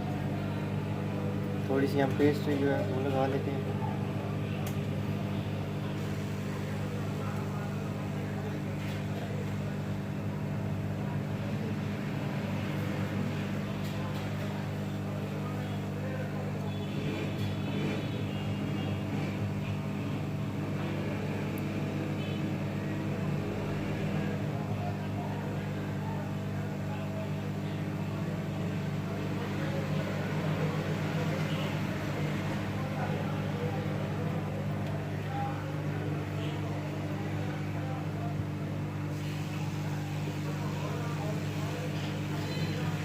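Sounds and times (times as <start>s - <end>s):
hot-air station fan hum and hiss: 0.0s - 43.0s.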